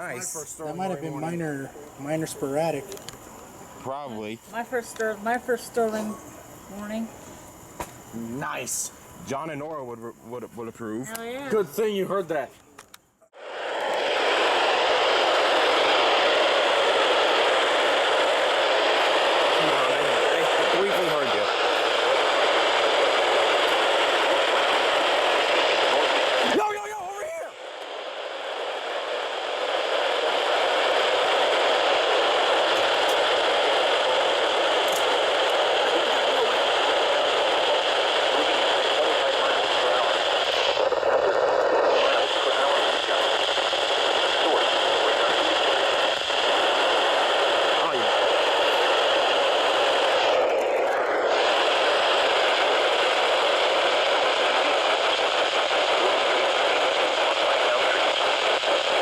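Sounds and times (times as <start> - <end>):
radio static hiss: 0.0 - 59.0.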